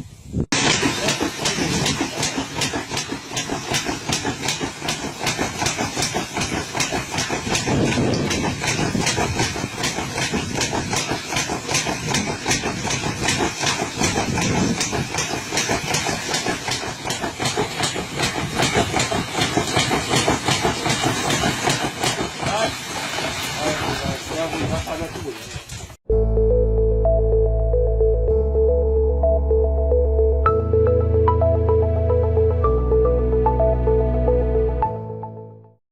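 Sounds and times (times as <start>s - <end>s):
threshing machine clatter: 0.5s - 26.0s
machinery drone: 26.1s - 35.2s.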